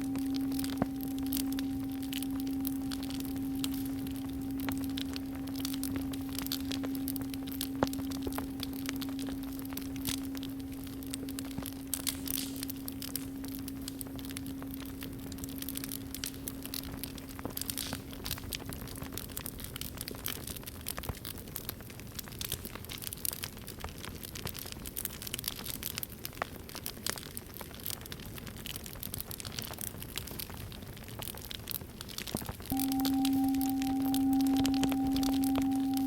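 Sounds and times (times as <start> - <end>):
singing bowl ringing: 0.0 - 17.8, 32.7 - 36.0
campfire crackling: 0.0 - 36.0.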